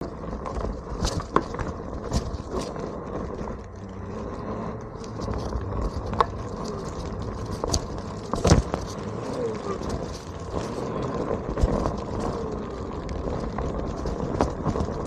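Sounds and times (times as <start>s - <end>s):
electric board rolling noise: 0.0s - 15.0s.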